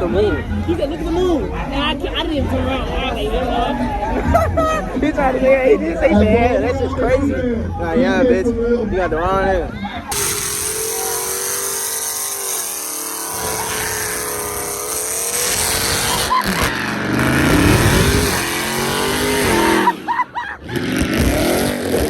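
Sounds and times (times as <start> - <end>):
car engine revving hard: 10.1 - 22.0.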